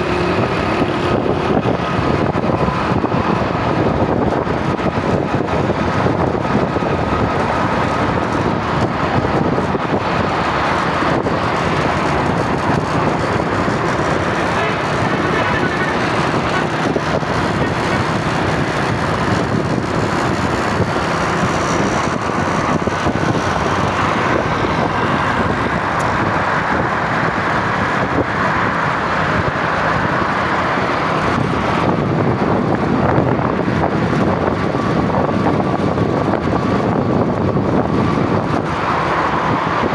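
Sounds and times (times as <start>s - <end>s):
vehicle road and wind noise: 0.0s - 39.9s.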